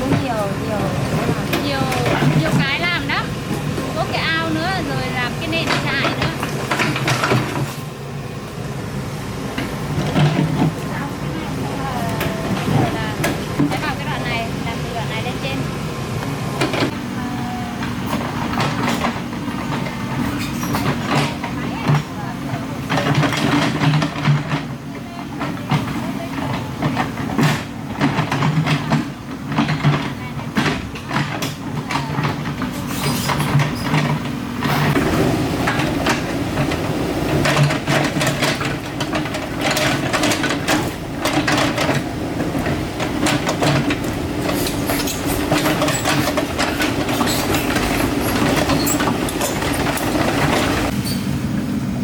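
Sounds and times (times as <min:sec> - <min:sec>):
diesel engine running: 0:00.0 - 0:52.0
tracks and bucket clanking: 0:00.0 - 0:52.0.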